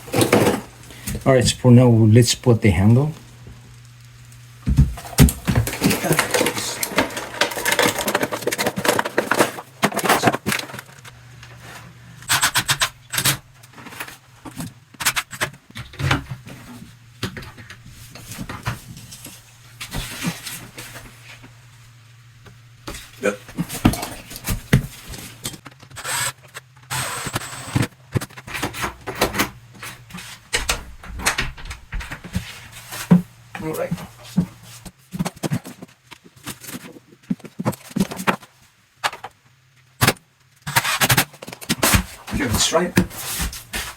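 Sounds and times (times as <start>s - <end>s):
metal parts clicking and scraping: 5.6s - 11.1s.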